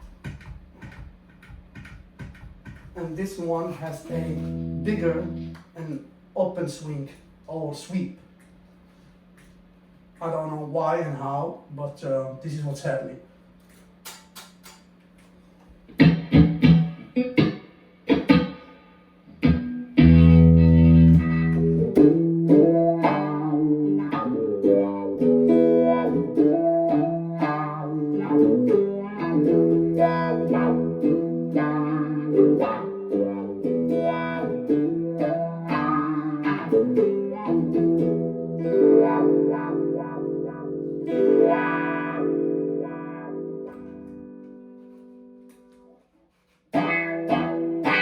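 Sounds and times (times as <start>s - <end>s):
electric guitar with wah pedal: 4.0s - 5.8s, 15.9s - 45.9s, 46.7s - 48.0s.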